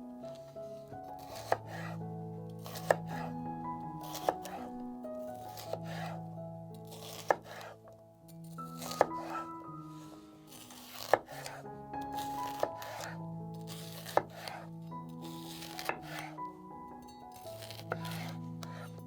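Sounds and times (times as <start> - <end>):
background music: 0.0 - 19.0
knife chopping on cutting board: 1.2 - 2.0, 2.6 - 3.3, 4.0 - 4.7, 5.3 - 6.2, 6.8 - 7.8, 8.7 - 9.5, 10.5 - 14.6, 15.3 - 16.4, 17.6 - 19.0.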